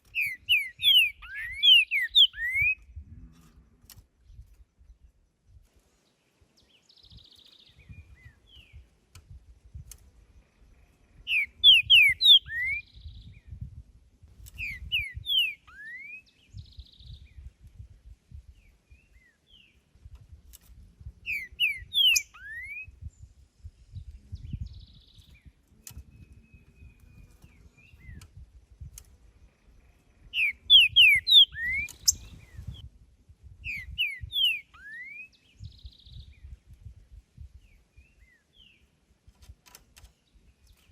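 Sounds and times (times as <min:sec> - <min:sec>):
bird singing whistled notes: 0:00.0 - 0:03.0, 0:06.6 - 0:08.9, 0:10.6 - 0:13.8, 0:14.5 - 0:19.8, 0:21.2 - 0:32.9, 0:33.6 - 0:38.9.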